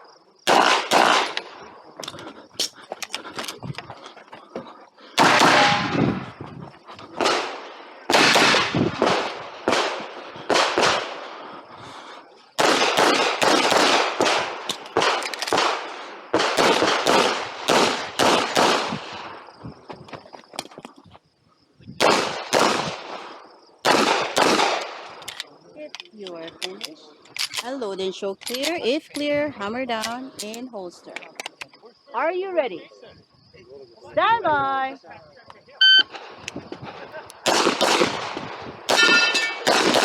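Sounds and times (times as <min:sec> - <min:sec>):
handgun shots with echo: 0:00.5 - 0:01.5, 0:05.2 - 0:06.0, 0:07.2 - 0:11.0, 0:37.4 - 0:38.2, 0:38.9 - 0:40.0.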